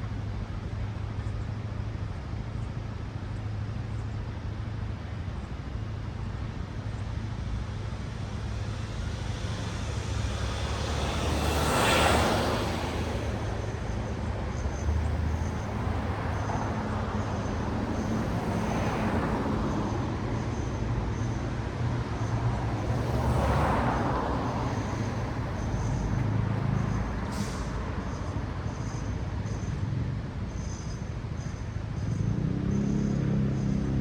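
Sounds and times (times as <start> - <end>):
cars passing by: 5.4 - 34.0
low engine rumble: 6.8 - 21.3, 22.0 - 27.7.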